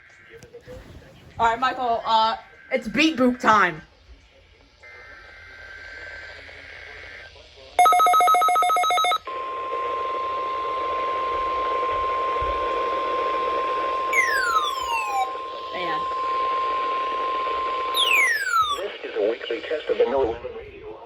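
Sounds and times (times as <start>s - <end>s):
radio hiss: 0.0s - 7.8s, 17.4s - 21.0s
digital data pulses: 7.8s - 9.2s, 14.2s - 16.1s, 17.9s - 18.9s
steady warning alarm tone: 13.0s - 18.8s.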